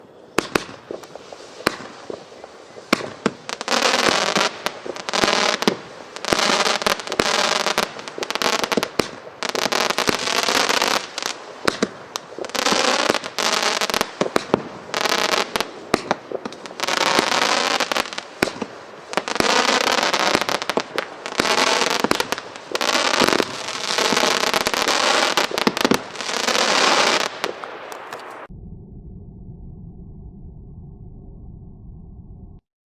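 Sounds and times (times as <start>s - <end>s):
firework launch pops: 0.4s - 9.2s, 10.0s - 14.7s, 15.4s - 17.4s, 18.4s - 28.5s
firework crackling: 0.4s - 28.5s.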